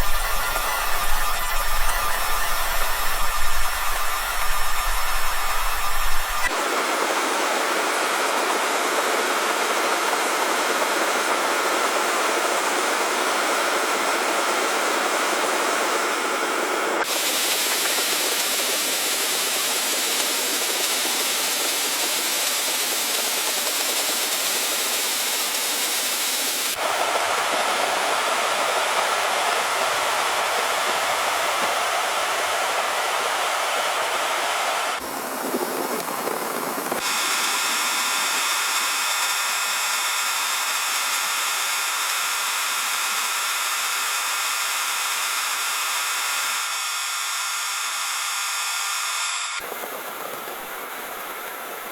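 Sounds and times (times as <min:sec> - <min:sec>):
water rushing over rocks: 0:00.0 - 0:06.5.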